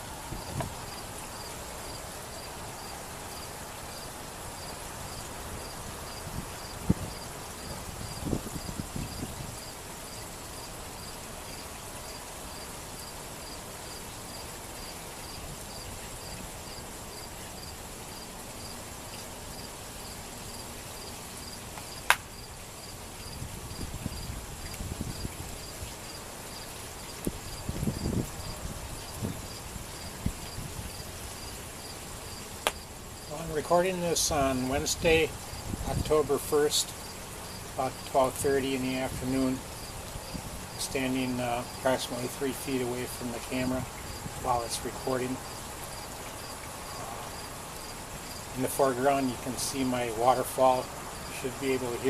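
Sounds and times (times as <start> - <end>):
waterfall gurgling: 0.0 - 52.0
cricket chirping: 0.4 - 33.4, 36.9 - 38.1, 39.6 - 40.8, 43.6 - 48.5.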